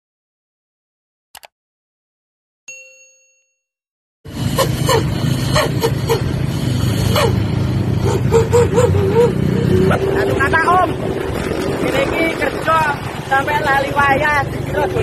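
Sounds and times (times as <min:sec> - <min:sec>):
ringing ding: 0:02.7 - 0:03.7
low motor rumble: 0:04.3 - 0:15.0.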